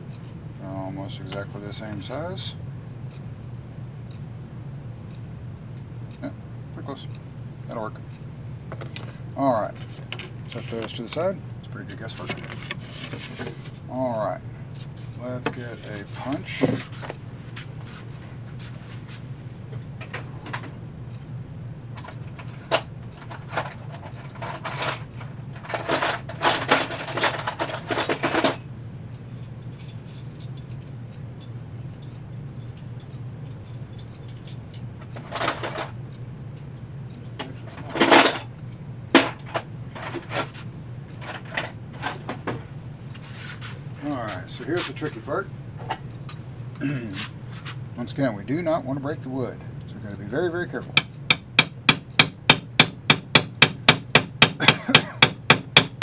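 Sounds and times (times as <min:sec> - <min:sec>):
low steady hum: 0:00.0 - 0:56.0.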